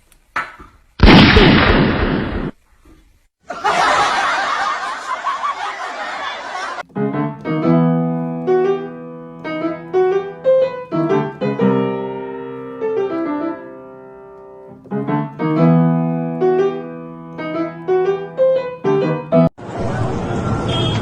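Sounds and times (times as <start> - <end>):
solo piano music: 6.8 - 19.6.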